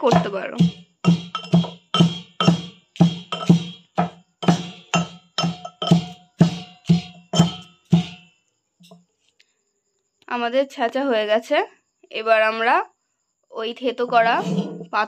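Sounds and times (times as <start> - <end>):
metal pestle pounding in mortar: 0.0 - 8.3.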